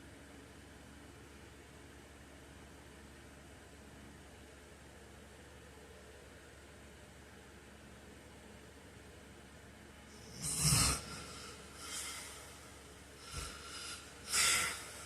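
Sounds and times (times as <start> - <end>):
steady low hum: 0.0 - 15.0
man snorting in sleep: 10.1 - 15.0
noisy breathing: 10.1 - 15.0.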